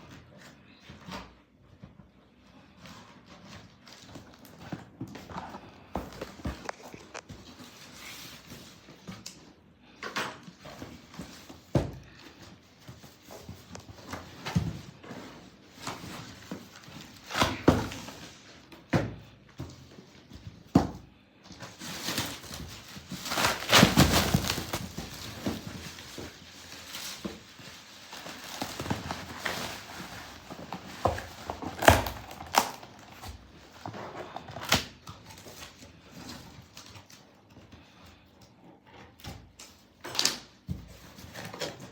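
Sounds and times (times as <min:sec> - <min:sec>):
packaging rustling: 0:03.3 - 0:09.1, 0:21.6 - 0:37.3.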